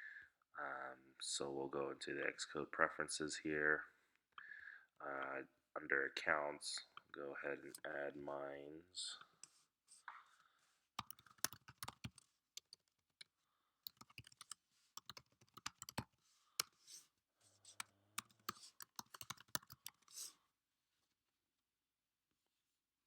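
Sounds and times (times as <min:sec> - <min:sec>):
typing on computer keyboard: 0:11.0 - 0:13.0, 0:13.8 - 0:16.7, 0:17.7 - 0:20.2.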